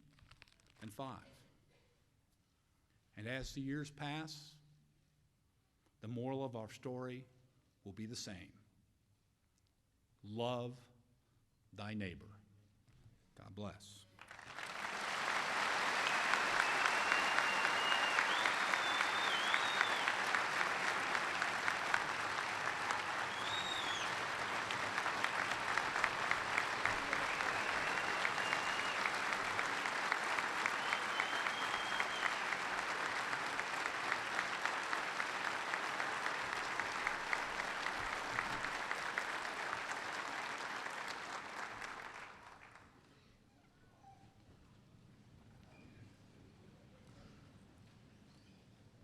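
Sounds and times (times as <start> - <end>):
crowd applauding: 14.2 - 43.0
high whistles: 16.0 - 20.6, 22.7 - 25.4, 26.0 - 33.0.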